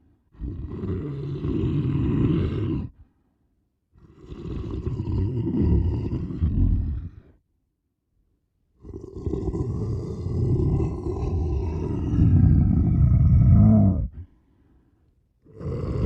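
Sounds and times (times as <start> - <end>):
person growling like a monster: 4.2 - 7.3, 8.8 - 14.3, 15.5 - 16.0.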